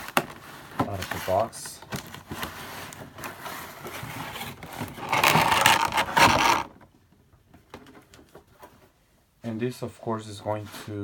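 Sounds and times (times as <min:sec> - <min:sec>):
box packaging scraping and rustling: 0:00.0 - 0:06.7.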